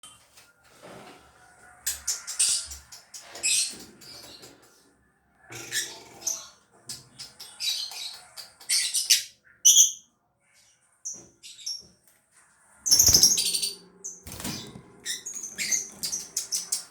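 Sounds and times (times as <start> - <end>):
high bird chirps: 12.9 - 16.9.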